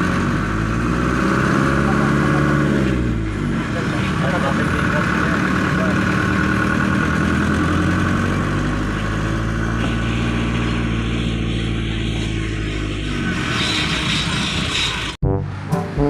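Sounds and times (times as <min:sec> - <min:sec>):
vehicle engine running: 0:00.0 - 0:13.4.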